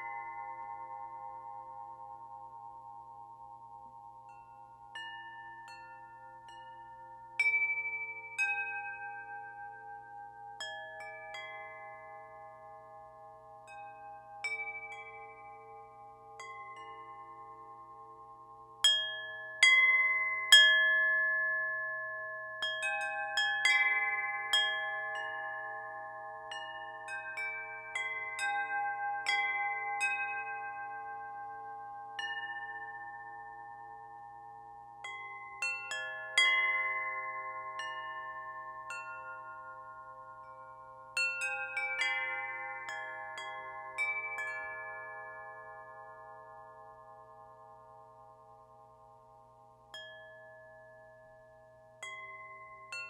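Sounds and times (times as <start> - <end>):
wind chimes ringing: 18.9 - 47.2.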